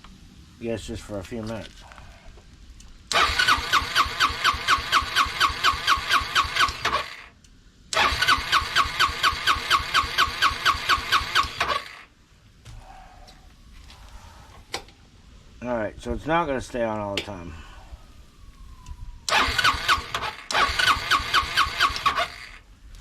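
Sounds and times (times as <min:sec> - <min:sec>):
scooter engine cranking: 0:03.1 - 0:07.2, 0:07.9 - 0:12.0, 0:19.3 - 0:22.6.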